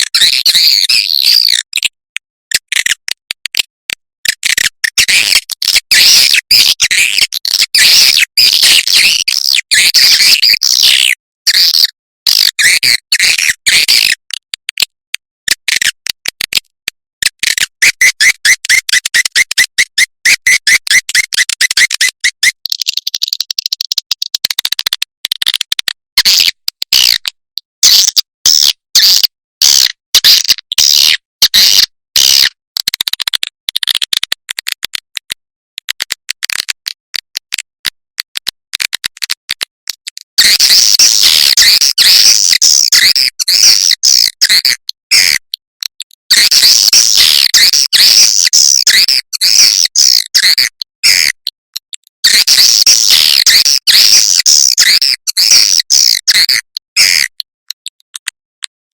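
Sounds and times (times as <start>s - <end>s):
rapid evenly spaced chirps: 17.5s - 24.4s, 40.4s - 44.8s, 46.5s - 50.8s
recorded swiftlet calls twittering: 40.3s - 45.6s, 46.2s - 51.3s, 52.3s - 58.1s.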